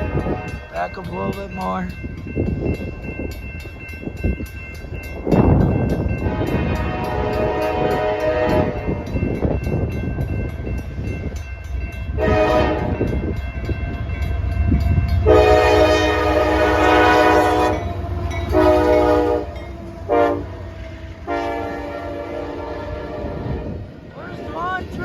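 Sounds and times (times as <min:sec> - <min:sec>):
train rumble: 0:00.0 - 0:25.0
locomotive air horn: 0:06.2 - 0:09.0, 0:12.2 - 0:13.0, 0:15.2 - 0:23.8.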